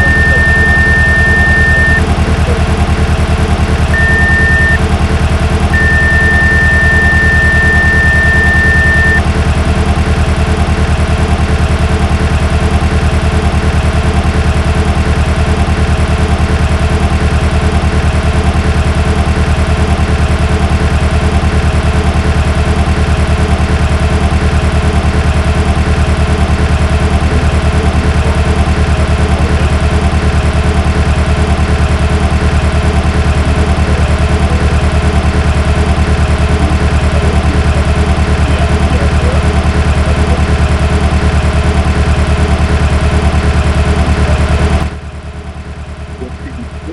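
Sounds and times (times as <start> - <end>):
steady high beep: 0.0 - 2.0, 4.0 - 4.8, 5.8 - 9.2
car engine idling with misfire: 0.0 - 46.9.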